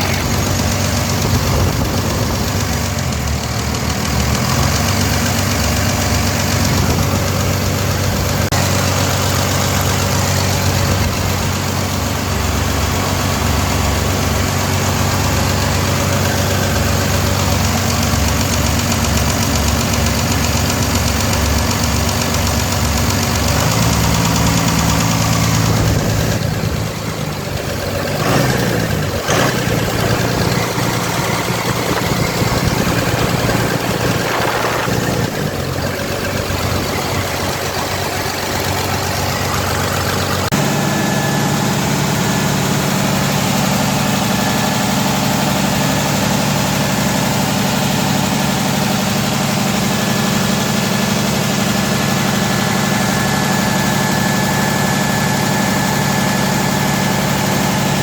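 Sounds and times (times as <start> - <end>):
diesel engine idling: 0.0 - 58.0.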